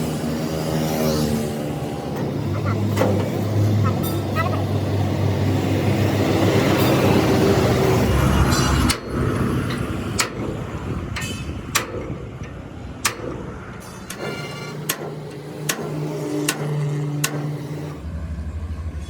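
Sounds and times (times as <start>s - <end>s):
engine low hum: 0.0s - 19.0s
sharp metal knocks: 2.0s - 4.6s, 8.4s - 18.0s.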